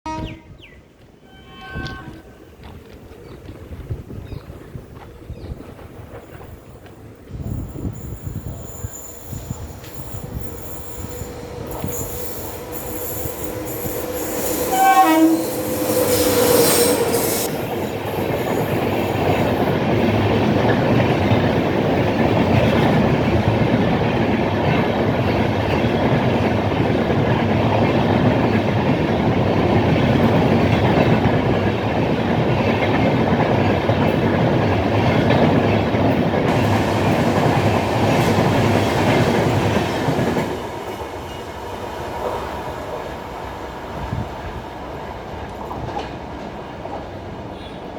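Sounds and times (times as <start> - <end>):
train horn steady tone: 0.0 - 0.6, 1.2 - 2.5, 11.2 - 17.7, 47.5 - 47.9
train wheels rumbling on rail: 0.0 - 47.9.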